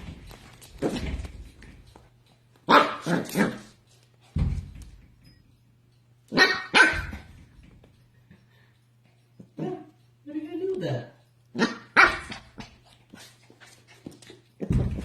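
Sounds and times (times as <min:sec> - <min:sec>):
dog barking: 0:02.7 - 0:03.6, 0:06.3 - 0:07.3, 0:11.6 - 0:12.4
low thump: 0:04.4 - 0:05.0.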